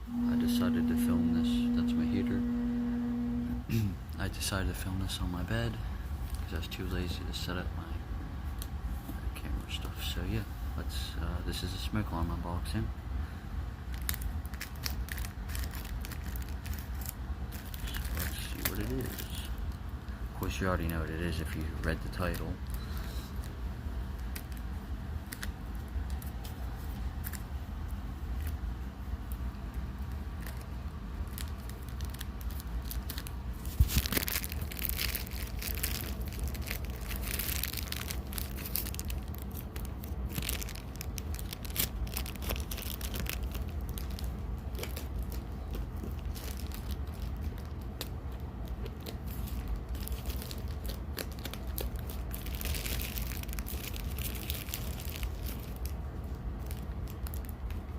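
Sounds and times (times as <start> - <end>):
room heater hum: 0.0 - 57.9
packaging tearing and crinkling: 13.9 - 19.8, 30.4 - 57.9.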